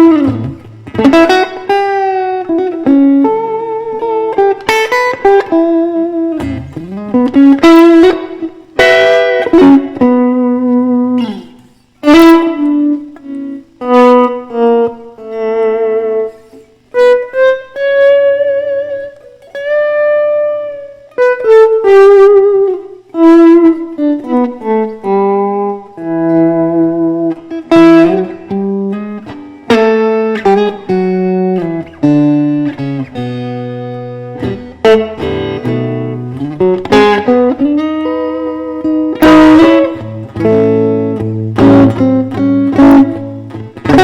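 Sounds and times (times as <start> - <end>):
electric guitar blues solo: 0.0 - 44.0.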